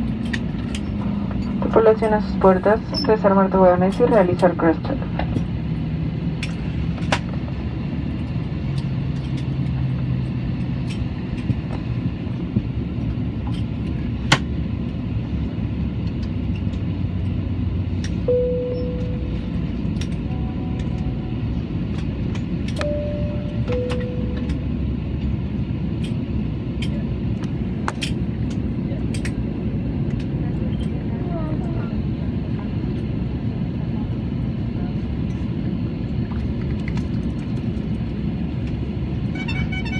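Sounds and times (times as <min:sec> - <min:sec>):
airliner cabin rumble: 0:00.0 - 0:39.9
short chime tones: 0:18.3 - 0:19.4, 0:22.8 - 0:24.5.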